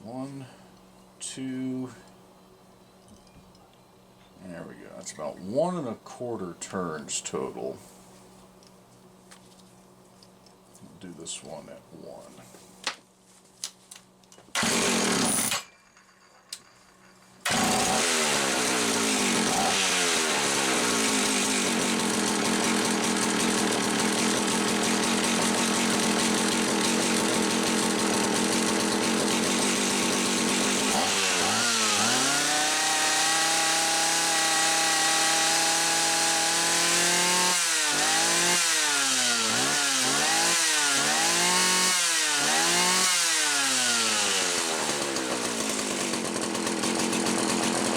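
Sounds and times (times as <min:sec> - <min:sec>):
chainsaw engine revving: 0:14.6 - 0:15.6, 0:17.4 - 0:47.9.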